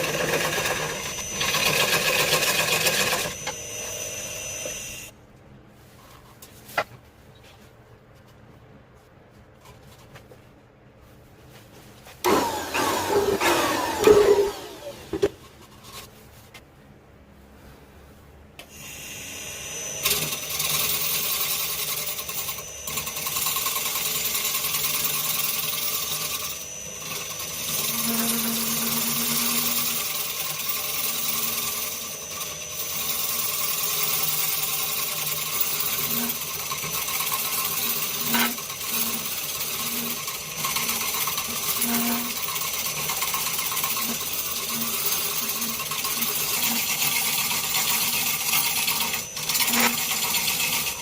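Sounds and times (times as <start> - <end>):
power tool whining against wood: 0.0 - 5.1, 12.2 - 15.3, 18.8 - 51.0.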